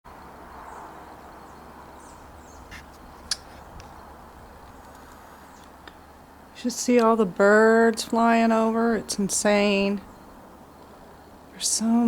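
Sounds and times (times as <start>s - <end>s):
steady background hiss: 0.1s - 12.0s.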